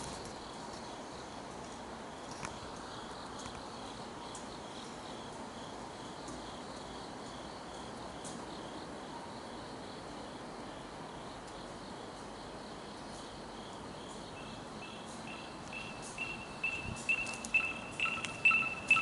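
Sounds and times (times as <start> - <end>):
scooter alarm beeping: 14.4 - 19.0.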